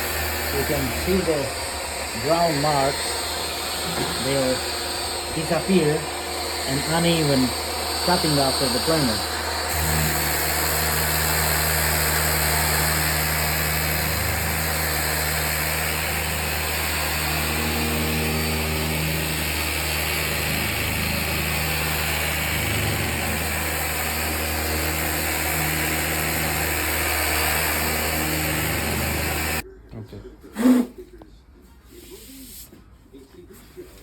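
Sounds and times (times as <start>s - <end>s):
electric sander on wood: 0.0s - 29.6s.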